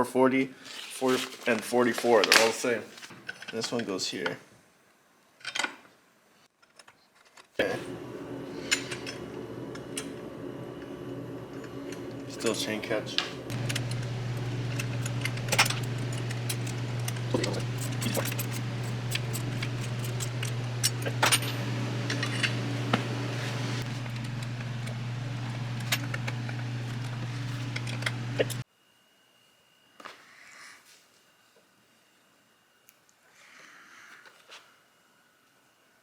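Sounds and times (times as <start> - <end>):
steady low hum: 7.6 - 28.6
metal parts and tools clinking: 13.5 - 21.5.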